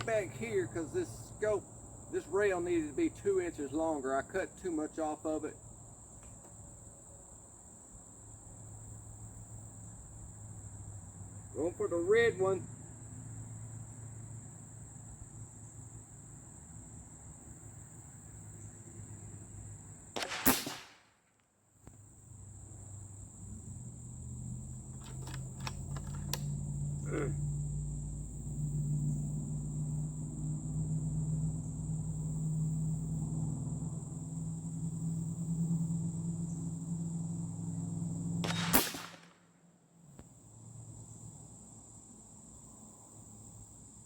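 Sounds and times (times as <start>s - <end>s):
crickets chirring: 0.0s - 21.1s, 21.7s - 44.0s
air rifle shot: 20.2s - 21.1s, 38.4s - 39.4s.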